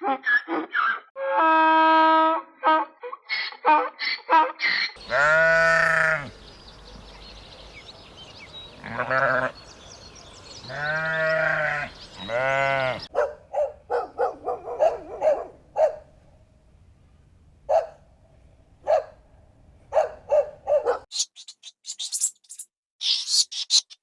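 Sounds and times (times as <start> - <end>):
farm animal bleating: 5.0 - 6.4, 8.8 - 9.7, 10.6 - 13.1.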